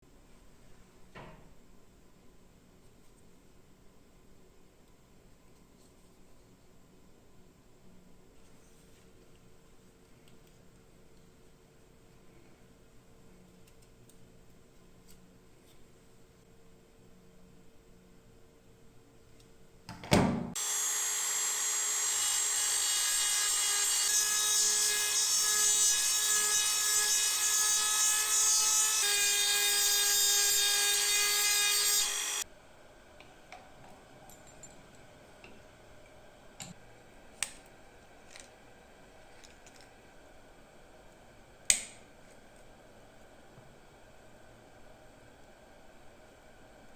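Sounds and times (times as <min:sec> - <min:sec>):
small power tool whining: 0:20.6 - 0:32.4.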